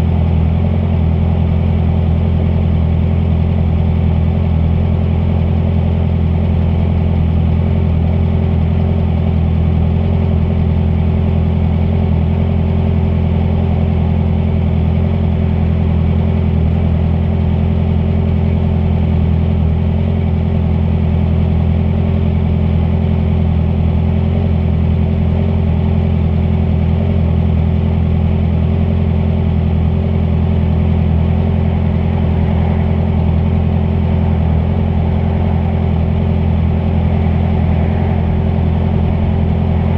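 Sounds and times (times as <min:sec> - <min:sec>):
motorcycle engine running steadily: 0:00.0 - 0:39.9.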